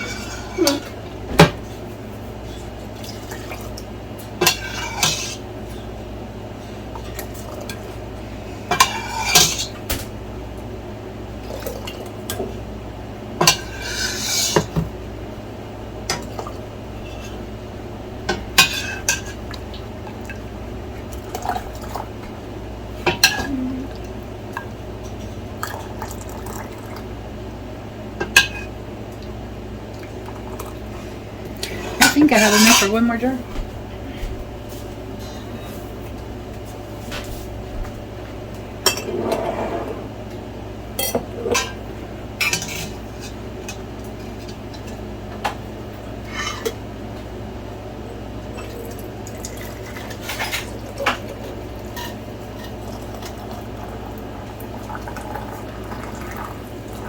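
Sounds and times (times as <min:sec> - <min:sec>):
steady low hum: 0:00.0 - 0:57.0
utensils and glass jars clinking: 0:32.0 - 0:33.4.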